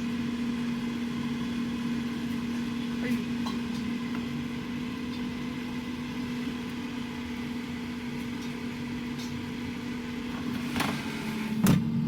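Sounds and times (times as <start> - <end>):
air fryer fan humming: 0.0 - 12.0.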